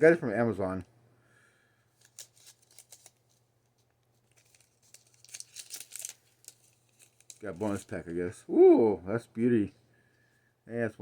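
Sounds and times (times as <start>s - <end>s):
card pack wrapper crinkling: 1.9s - 8.1s.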